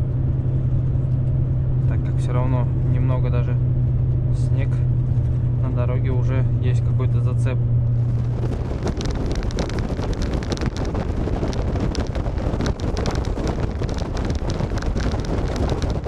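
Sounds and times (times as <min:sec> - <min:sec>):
truck engine rumble: 0:00.0 - 0:16.0
wind buffeting microphone: 0:07.6 - 0:16.0.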